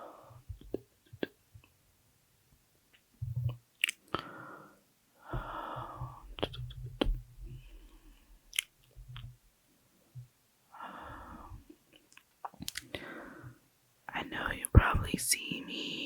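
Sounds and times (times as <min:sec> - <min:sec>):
wet mouth clicks: 0:03.5 - 0:04.1, 0:08.5 - 0:08.7, 0:12.1 - 0:13.0
heavy breathing: 0:04.2 - 0:06.4, 0:10.7 - 0:11.7, 0:12.9 - 0:13.6.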